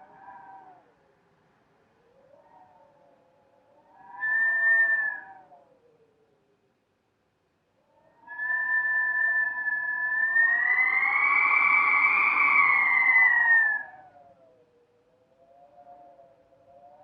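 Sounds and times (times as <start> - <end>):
wind howling in gusts: 7.8 - 17.0.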